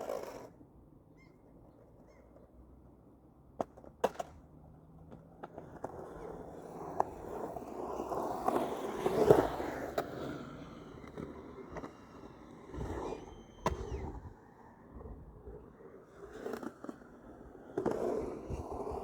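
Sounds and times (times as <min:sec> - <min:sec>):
skateboard wheels rolling: 0:00.0 - 0:00.8, 0:01.5 - 0:19.0
skateboard clacks: 0:03.5 - 0:14.4.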